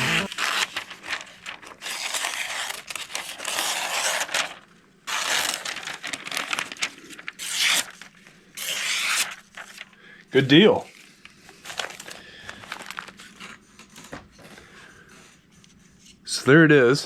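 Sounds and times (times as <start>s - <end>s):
knife slicing paper: 0.0s - 9.8s.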